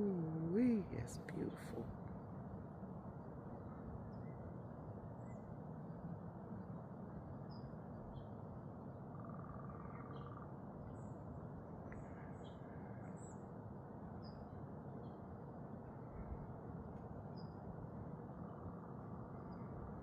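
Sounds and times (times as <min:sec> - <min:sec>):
low background hiss: 0:00.0 - 0:20.0.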